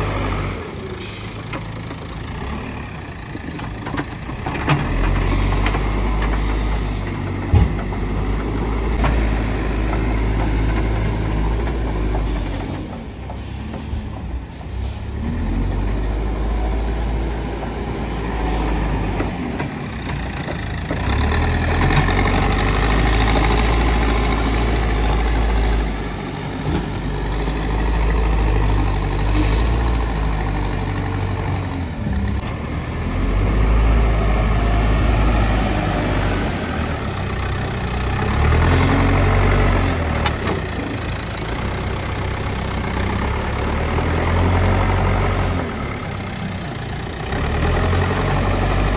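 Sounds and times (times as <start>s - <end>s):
diesel engine revving: 0.0s - 48.9s.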